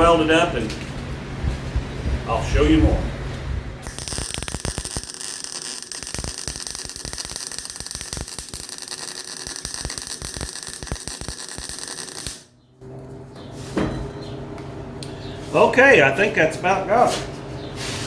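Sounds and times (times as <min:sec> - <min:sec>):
arc welder crackling: 0:00.0 - 0:12.5.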